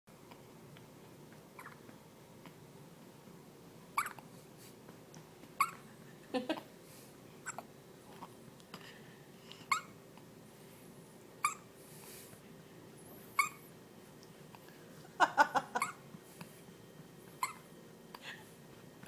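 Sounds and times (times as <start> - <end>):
pet hiccups high chirps: 4.0 - 4.2.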